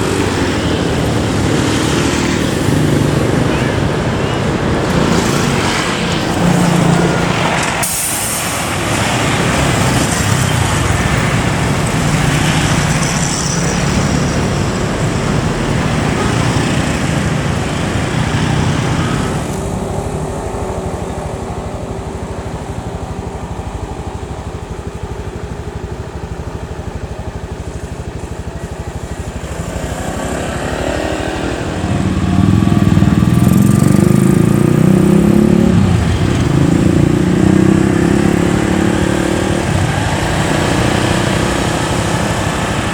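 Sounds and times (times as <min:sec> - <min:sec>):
vehicle engine and road noise: 0:00.0 - 0:42.9.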